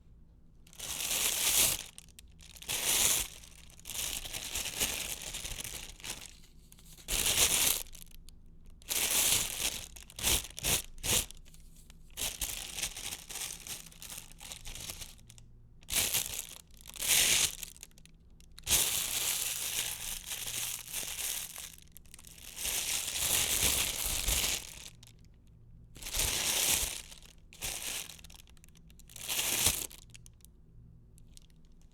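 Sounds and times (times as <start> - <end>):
plastic envelope crinkling: 0.7 - 6.4, 12.2 - 15.3, 18.7 - 25.3, 26.0 - 30.1.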